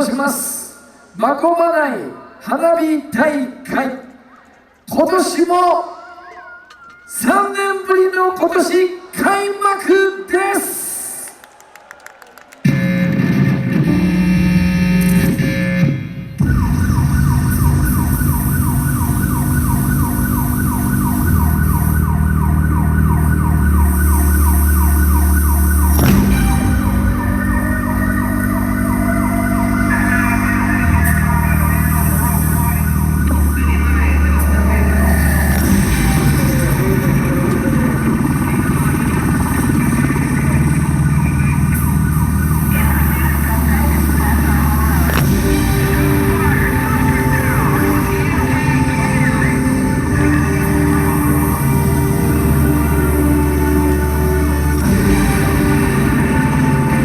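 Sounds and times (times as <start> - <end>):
whistling fireworks: 5.6 - 7.6, 16.4 - 57.0
music soundtrack: 12.7 - 57.0
siren-like synth falling: 12.7 - 57.0
deep sustained bass notes: 12.9 - 57.0
fireworks exploding: 24.2 - 30.3, 41.6 - 57.0.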